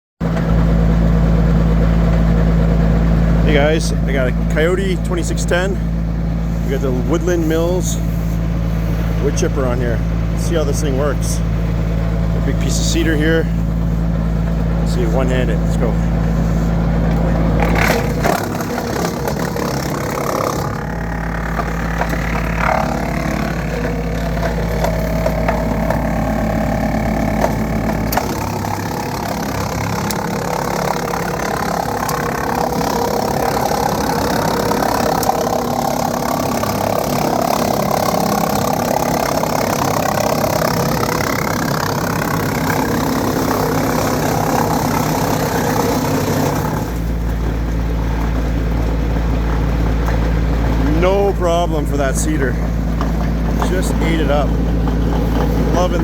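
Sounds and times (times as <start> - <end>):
tractor diesel engine: 0.2 - 56.0
wood chipper cracking and knocking: 13.7 - 56.0.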